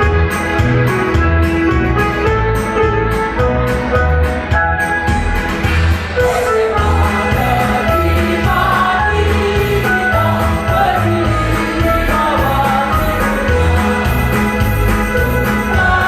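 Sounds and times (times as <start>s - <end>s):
instrumental accompaniment: 0.0s - 16.0s
steady bass beat: 0.0s - 16.0s
choir singing: 6.3s - 16.0s.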